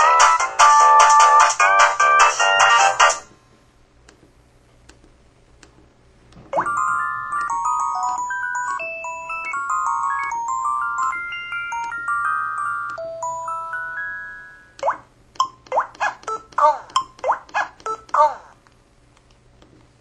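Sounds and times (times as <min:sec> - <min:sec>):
phone ringtone melody: 0:06.6 - 0:14.8.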